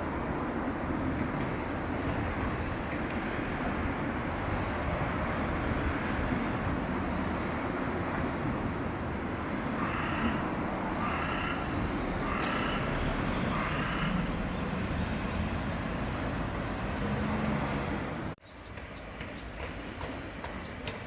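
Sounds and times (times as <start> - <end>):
outdoor rumble and hiss: 0.0 - 21.0.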